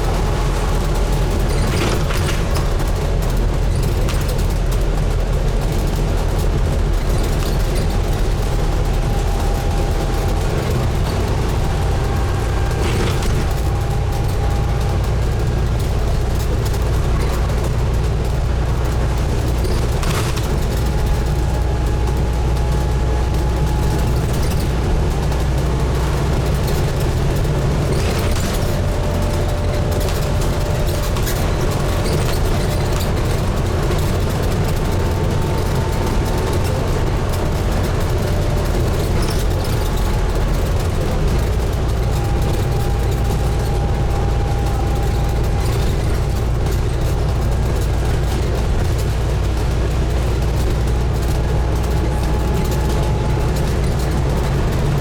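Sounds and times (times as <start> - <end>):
bus diesel engine running: 0.0 - 55.0
road and cabin noise: 0.0 - 55.0
faint whine: 19.6 - 49.0.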